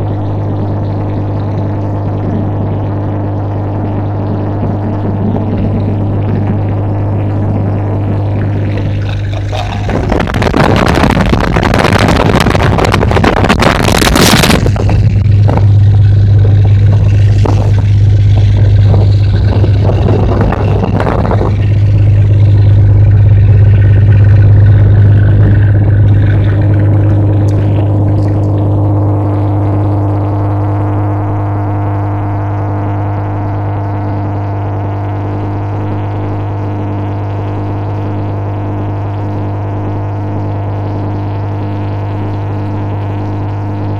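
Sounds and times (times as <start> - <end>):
diesel engine droning: 0.0 - 43.9
loud rushing noise: 4.7 - 30.9.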